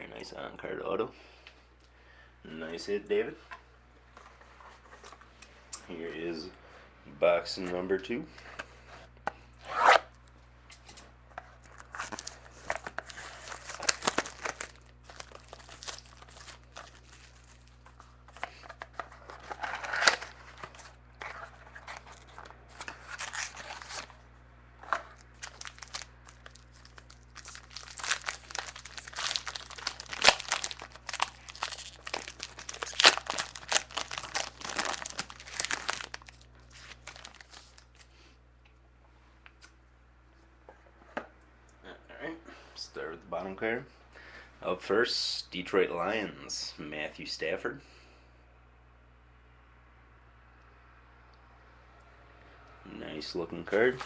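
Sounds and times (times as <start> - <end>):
wrapping torn and crinkled: 11.5 - 24.2, 24.8 - 38.1.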